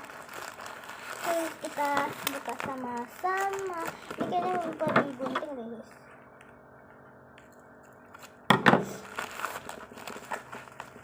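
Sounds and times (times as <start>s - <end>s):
packaging ripping: 0.0s - 5.5s, 8.1s - 11.0s
wrapping crinkling: 0.0s - 6.2s, 7.8s - 11.0s.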